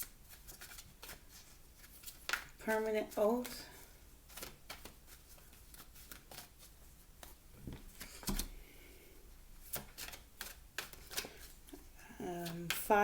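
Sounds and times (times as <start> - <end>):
cards being shuffled: 0.3 - 3.7, 4.3 - 8.6, 9.6 - 11.8, 12.4 - 12.9.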